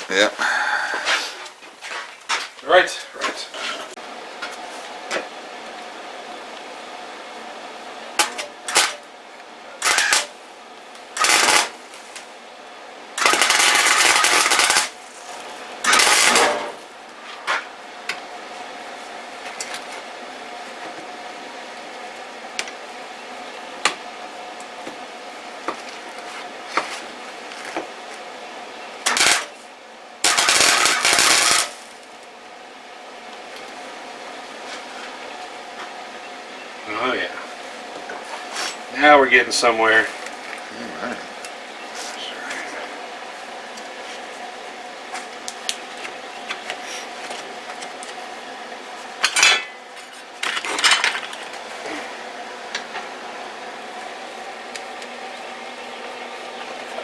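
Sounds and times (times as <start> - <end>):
welder hum: 8.1 - 9.1, 9.7 - 12.2, 13.2 - 16.9, 29.0 - 29.6, 30.2 - 32.1
crackling welding arc: 8.2 - 9.1, 9.8 - 12.3, 13.2 - 16.9, 29.0 - 29.6, 30.2 - 32.3.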